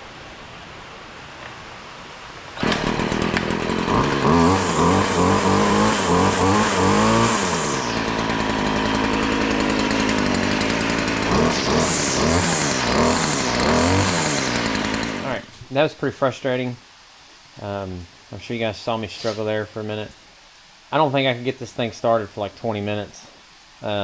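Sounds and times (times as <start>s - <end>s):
string trimmer engine revving: 2.6s - 15.5s
steady hiss: 15.2s - 24.0s.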